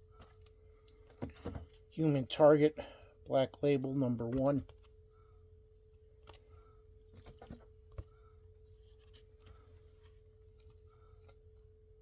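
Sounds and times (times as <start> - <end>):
faint steady hum: 0.0 - 12.0
comic books handled clicking: 4.3 - 4.9.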